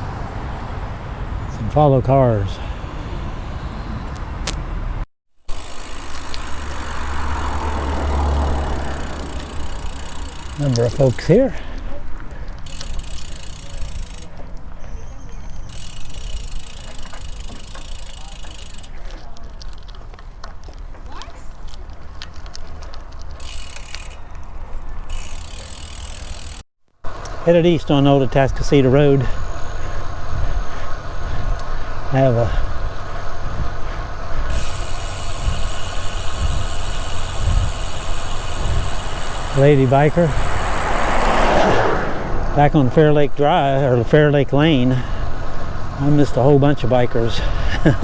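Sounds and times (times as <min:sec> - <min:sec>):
motor vehicle passing: 0:00.0 - 0:48.0
bicycle hub ratchet clicks: 0:05.5 - 0:14.6, 0:15.6 - 0:20.8, 0:21.5 - 0:28.6, 0:29.2 - 0:41.7
wind rumbling on microphone: 0:27.1 - 0:42.9.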